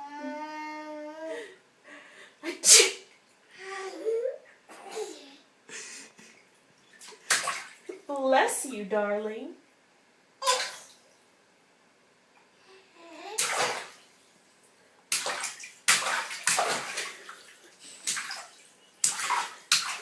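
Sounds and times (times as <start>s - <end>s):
vocal fake sneeze: 2.6s - 3.1s
bathwater splashing: 6.2s - 8.1s, 10.4s - 11.0s, 13.2s - 20.0s.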